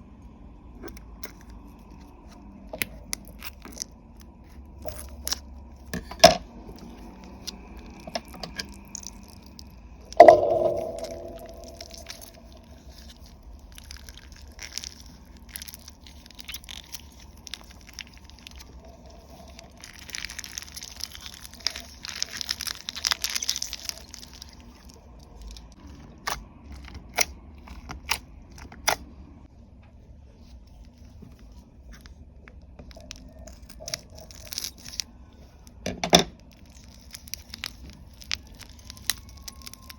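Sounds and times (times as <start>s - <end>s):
slime squished by hand: 6.7s - 29.0s, 32.8s - 35.8s, 36.4s - 39.9s
sticky clicks and crackling pops: 10.4s - 29.0s, 36.5s - 39.9s.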